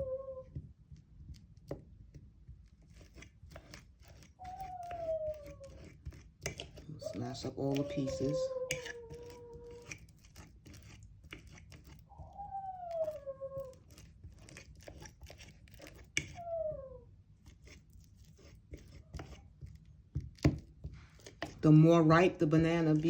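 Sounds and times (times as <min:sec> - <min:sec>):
fork mashing banana: 0:00.9 - 0:16.6, 0:17.3 - 0:23.0
fork tines clicking on dish: 0:07.6 - 0:12.0.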